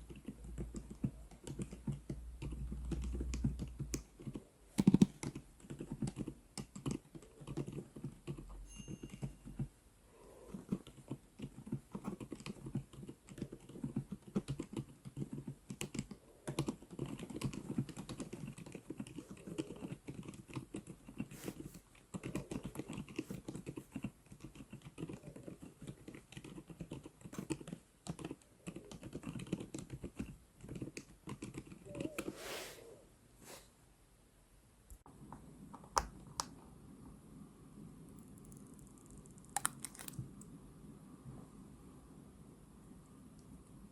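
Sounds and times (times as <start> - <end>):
mechanical keyboard typing: 0.0 - 9.7, 10.5 - 32.2, 38.2 - 40.2.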